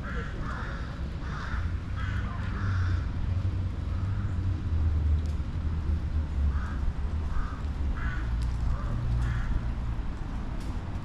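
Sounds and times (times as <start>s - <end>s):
crows cawing: 0.0s - 4.4s, 6.5s - 9.8s.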